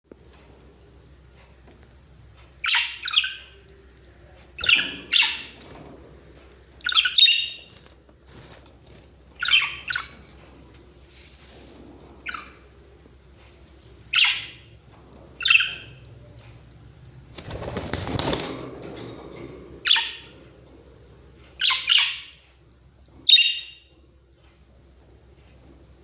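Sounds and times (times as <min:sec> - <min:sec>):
parrots chirping and squawking: 0:02.6 - 0:03.5, 0:04.6 - 0:05.6, 0:06.8 - 0:07.7, 0:09.4 - 0:10.3, 0:12.2 - 0:12.7, 0:14.1 - 0:14.8, 0:15.4 - 0:16.0, 0:19.8 - 0:20.3, 0:21.6 - 0:22.4, 0:23.2 - 0:23.8
noisy rustle: 0:04.3 - 0:21.5.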